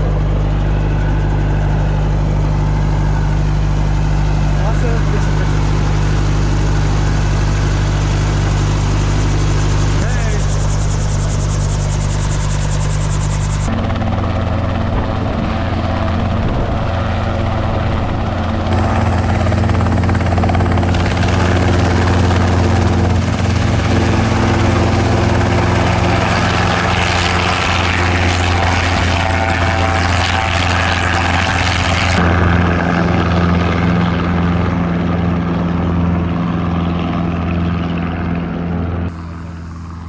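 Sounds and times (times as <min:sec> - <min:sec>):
helicopter engine and rotor: 0:00.0 - 0:40.0.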